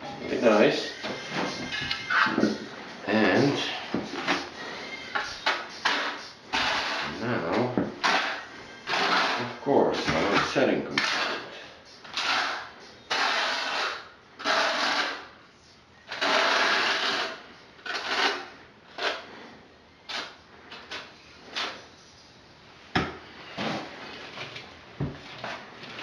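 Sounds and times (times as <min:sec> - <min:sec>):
trowel scraping mortar: 0:05.2 - 0:07.2, 0:08.0 - 0:11.5, 0:12.1 - 0:15.3, 0:16.1 - 0:19.3.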